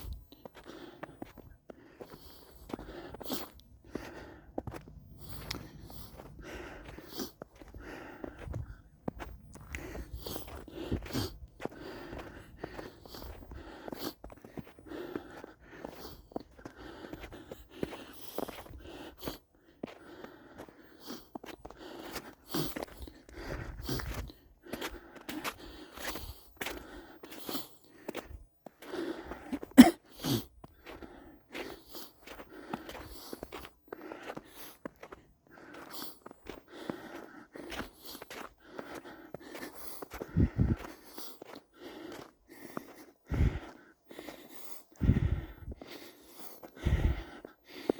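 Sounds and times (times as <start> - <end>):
footsteps crunching on snow: 0.0 - 20.0, 30.8 - 43.1.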